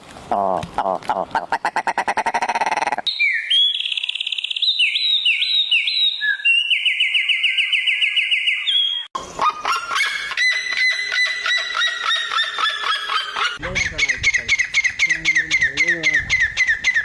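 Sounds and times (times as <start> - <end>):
animal repeated calls: 0.8 - 3.0
songbird whistling and trilling: 3.0 - 9.1.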